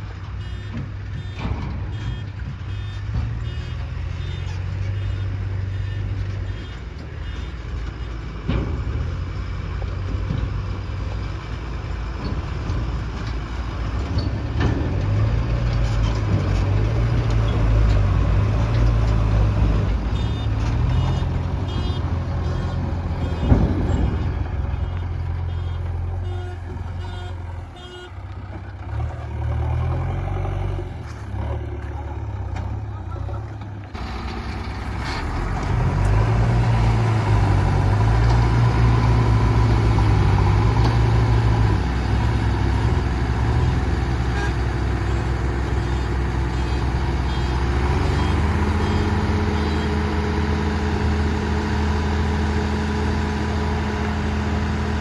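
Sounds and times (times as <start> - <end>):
reversing beeps: 0.4 - 8.2, 20.2 - 24.1
diesel engine revving: 1.0 - 55.0
sharp clunks: 12.2 - 27.4.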